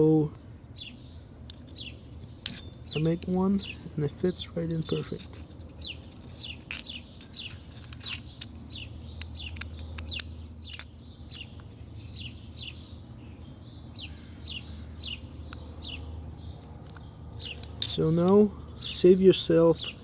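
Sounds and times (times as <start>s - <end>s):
bird chirping: 0.0s - 20.0s.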